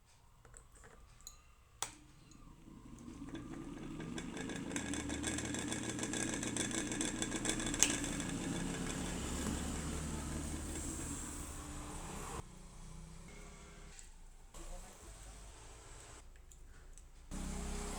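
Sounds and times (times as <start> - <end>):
ceiling fan rattling hum: 2.0 - 12.4.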